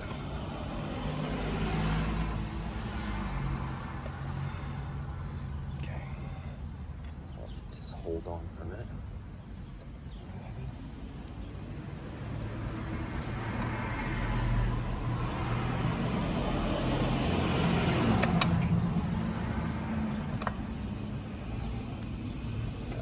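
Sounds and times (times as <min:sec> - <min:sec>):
car passing by: 0:00.0 - 0:05.6, 0:12.4 - 0:23.0
sharp clicks: 0:18.0 - 0:18.8.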